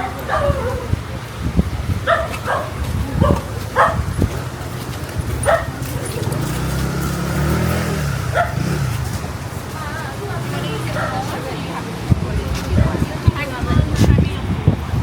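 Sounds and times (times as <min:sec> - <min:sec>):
dog barking: 0:00.0 - 0:01.0, 0:02.0 - 0:04.1, 0:05.4 - 0:05.9, 0:08.3 - 0:08.8, 0:10.9 - 0:11.4
vehicle engine rumble: 0:00.0 - 0:15.0.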